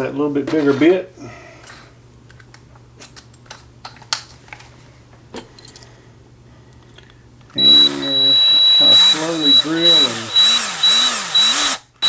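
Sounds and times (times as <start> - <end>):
drill handling clicks and taps: 7.6 - 12.0.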